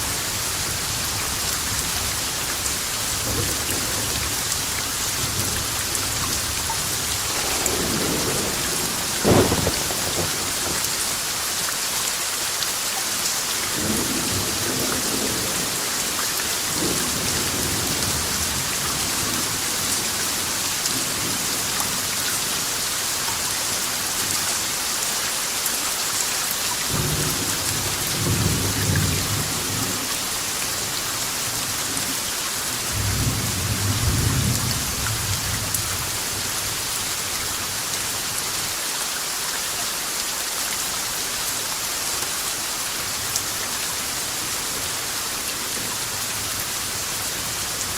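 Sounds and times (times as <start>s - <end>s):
heavy rain hissing: 0.0s - 47.9s
thunder rumbling: 3.0s - 11.1s, 32.9s - 36.0s.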